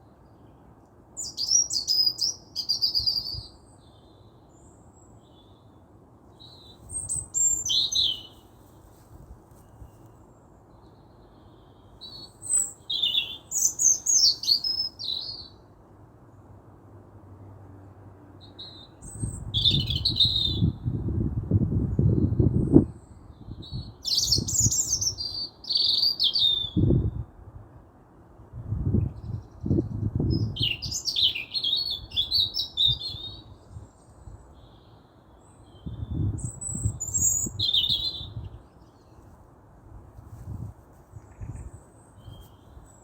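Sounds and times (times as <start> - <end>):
songbird singing: 0.0 - 16.6, 18.4 - 21.1, 21.9 - 27.3, 28.8 - 39.4, 40.4 - 43.0.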